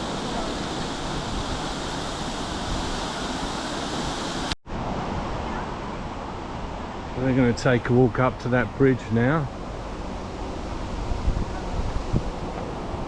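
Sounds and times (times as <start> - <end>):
waterfall rushing: 0.0 - 4.6.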